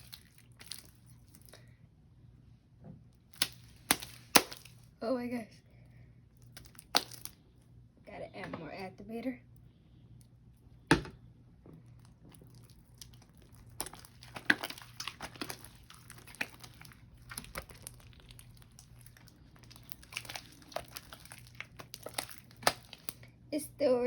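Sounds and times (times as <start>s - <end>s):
sticky slime clicking and crackling: 0.0s - 1.6s, 3.2s - 4.9s, 6.4s - 7.4s, 11.8s - 23.3s.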